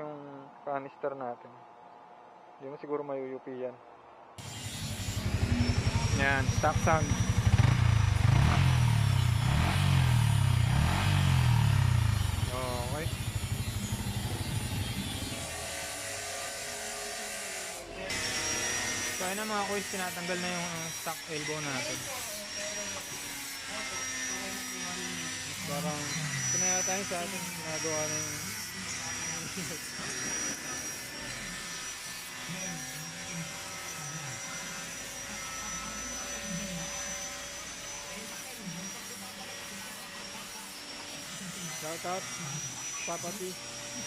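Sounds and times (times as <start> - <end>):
motorcycle engine idling: 4.4 - 15.6
electric motor hum and whine: 4.4 - 44.0
faint indistinct voices: 32.3 - 44.0.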